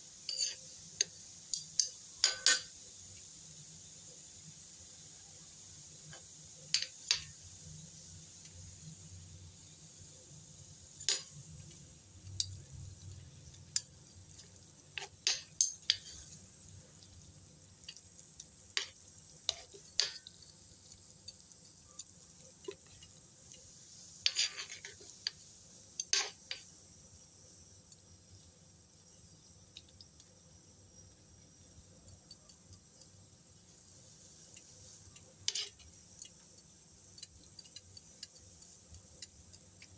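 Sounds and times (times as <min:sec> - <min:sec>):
faint steady hiss: 0:00.0 - 0:39.9
utensils knocking on cookware: 0:02.2 - 0:02.7.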